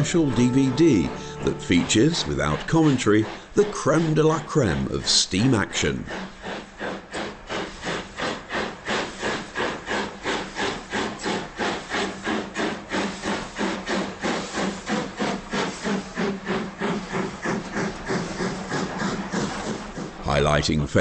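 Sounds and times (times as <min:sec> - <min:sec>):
steam locomotive chuffing: 0:00.0 - 0:21.0.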